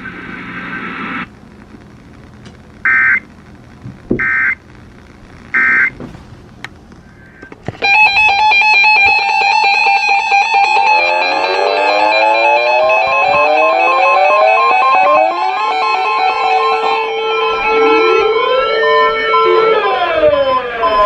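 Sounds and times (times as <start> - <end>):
data tone bursts: 2.8 - 3.3, 4.2 - 4.6, 5.5 - 6.0
music with rapid plucked notes: 7.8 - 21.0.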